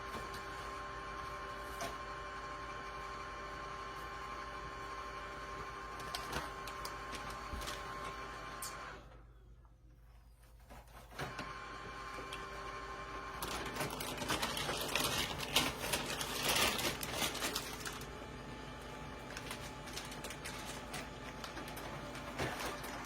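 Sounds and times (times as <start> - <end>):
laser printer whirring and clicking: 11.1 - 23.0.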